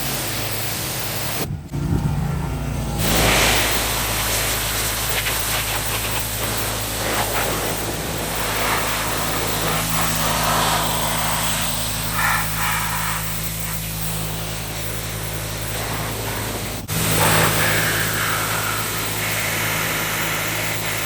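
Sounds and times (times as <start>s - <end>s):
water spray hissing on car: 0.0s - 1.5s, 2.6s - 21.0s
pressure washer motor hum: 0.0s - 21.0s.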